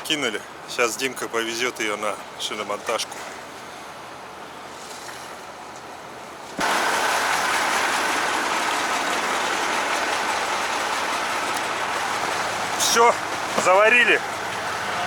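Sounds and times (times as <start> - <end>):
machine running noise: 6.6 - 15.0.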